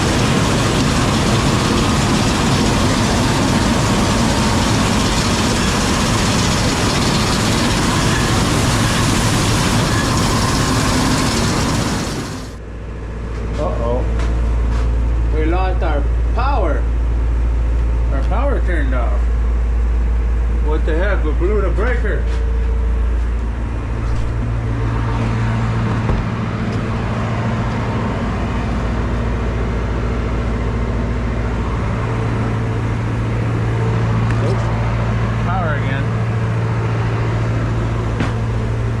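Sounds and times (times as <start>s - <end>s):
electric machinery running: 0.0s - 12.6s, 23.4s - 39.0s.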